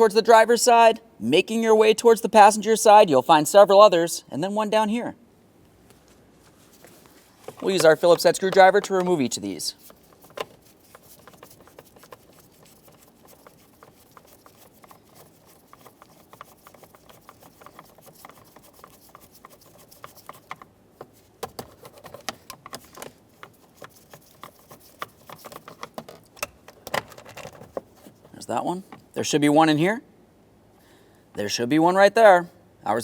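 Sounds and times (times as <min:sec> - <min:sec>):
screwdriver clicking and scraping screws: 0:07.5 - 0:29.0.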